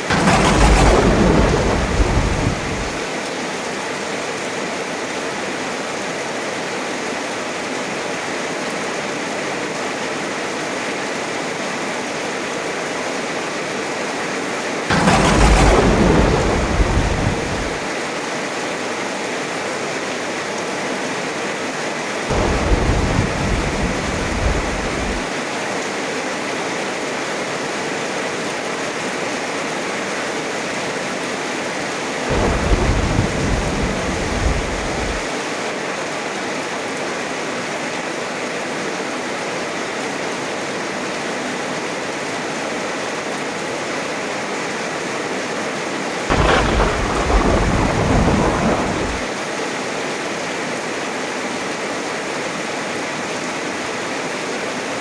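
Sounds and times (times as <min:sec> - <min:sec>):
thunder rolling: 0:00.0 - 0:03.1, 0:14.9 - 0:18.0, 0:22.3 - 0:25.4, 0:32.3 - 0:35.3, 0:46.3 - 0:49.3
heavy rain falling: 0:00.0 - 0:03.8, 0:14.9 - 0:18.1, 0:22.3 - 0:25.9, 0:32.1 - 0:35.8, 0:46.3 - 0:49.4.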